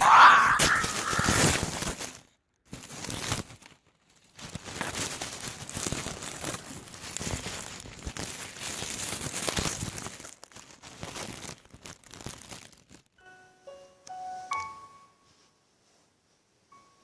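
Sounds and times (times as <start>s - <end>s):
crinkling and rustling: 0.0s - 13.2s.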